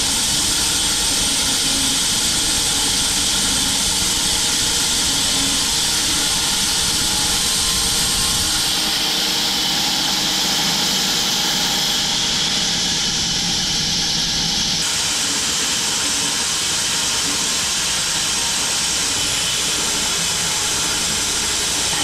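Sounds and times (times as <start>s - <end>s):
bandsaw mill sawing log: 0.0s - 12.2s.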